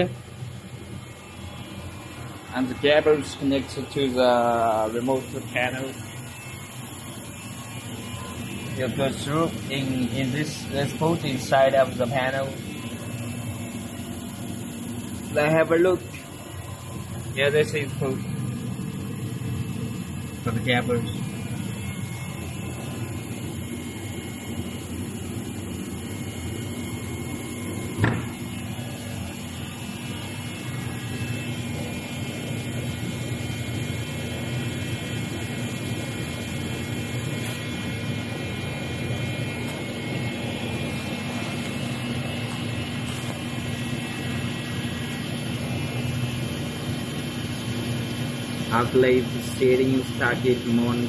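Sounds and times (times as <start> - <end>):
machinery humming: 0.0 - 51.0
sharp knock: 28.0 - 28.3.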